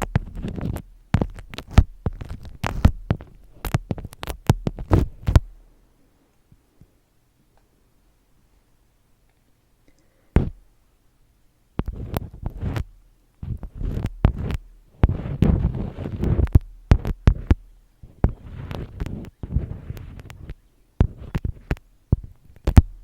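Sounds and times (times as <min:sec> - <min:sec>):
crinkly crackling rustle: 0:00.0 - 0:05.4, 0:11.9 - 0:22.8
clicks and taps: 0:00.0 - 0:05.5, 0:11.8 - 0:12.8, 0:13.4 - 0:23.0.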